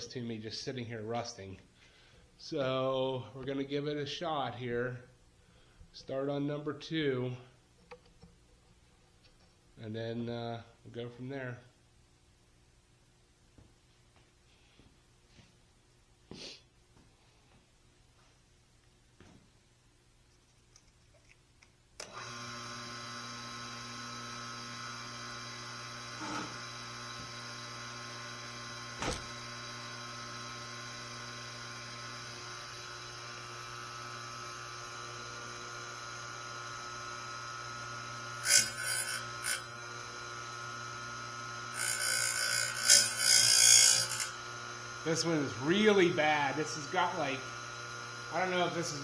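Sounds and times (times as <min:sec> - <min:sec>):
electric grinder humming: 0:22.0 - 0:49.0
grinding wheel on blade: 0:22.1 - 0:49.0.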